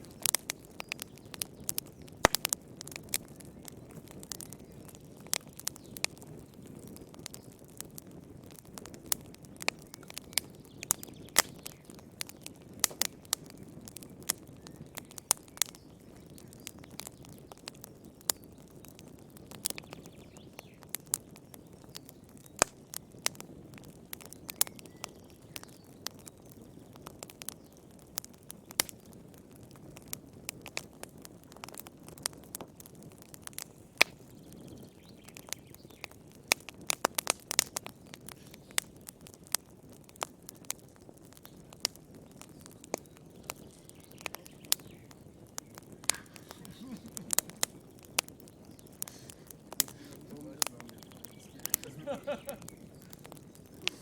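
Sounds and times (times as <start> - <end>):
wood fire crackling: 0.0 - 54.0
low rush of flame: 26.1 - 54.0.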